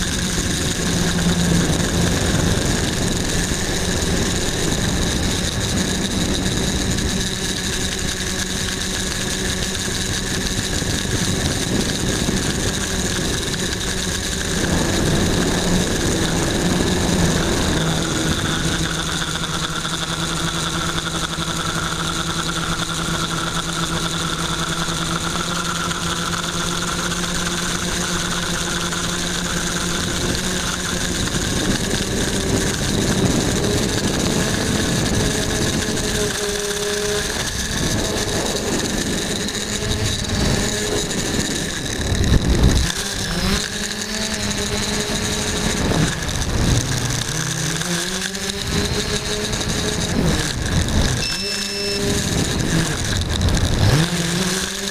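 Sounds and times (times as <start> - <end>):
low rumbling noise: 0.0 - 22.3, 28.2 - 44.0
drone motors whining: 0.0 - 54.9.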